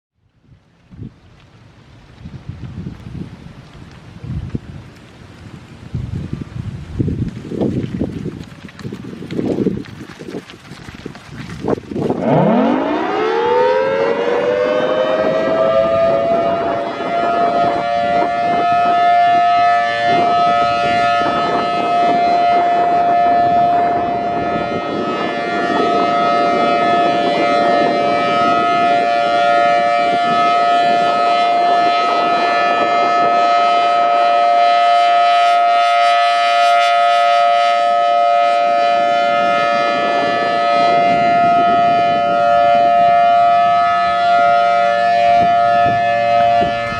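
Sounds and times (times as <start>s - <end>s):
wind buffeting microphone: 0.2s - 46.9s
warning siren two-note chord: 12.2s - 46.9s.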